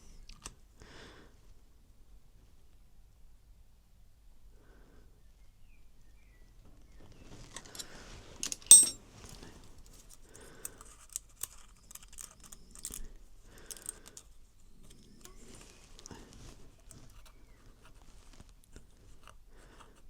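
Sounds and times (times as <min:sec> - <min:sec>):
metal hand tools clinking: 0:08.6 - 0:09.0.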